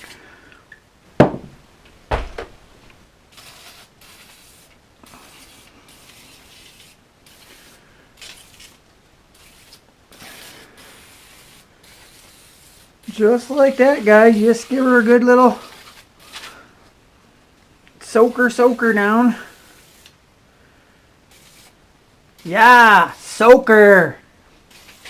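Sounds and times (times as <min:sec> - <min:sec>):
sharp knocks: 0:01.2 - 0:02.6
hissing spray of oil: 0:03.3 - 0:08.8, 0:09.4 - 0:16.6, 0:21.3 - 0:21.8.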